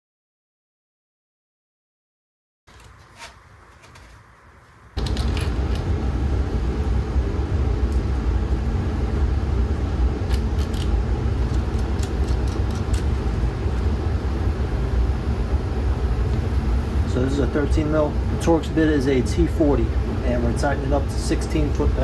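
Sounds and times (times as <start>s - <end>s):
low rumbling drone: 5.0s - 22.0s.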